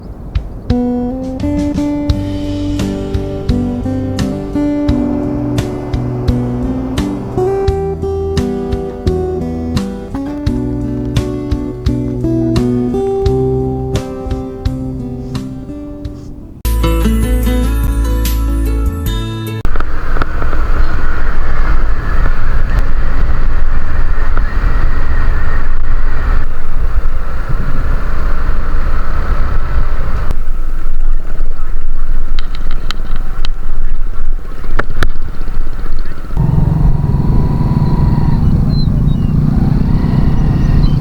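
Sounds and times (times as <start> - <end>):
motorcycle running: 0.7 - 15.5, 19.7 - 30.8, 36.0 - 41.0.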